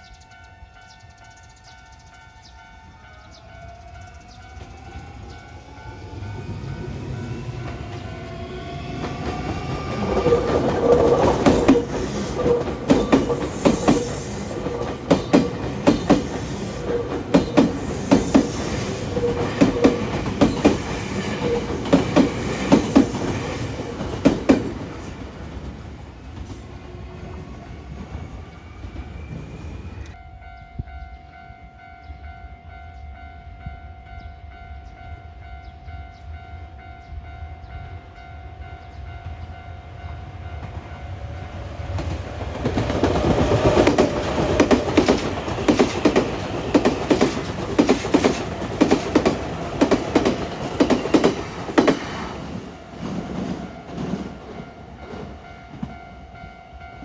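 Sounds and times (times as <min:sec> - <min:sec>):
train wheels clattering over rail joints: 0:09.0 - 0:25.0, 0:42.0 - 0:54.3
level crossing warning bell: 0:53.9 - 0:57.0.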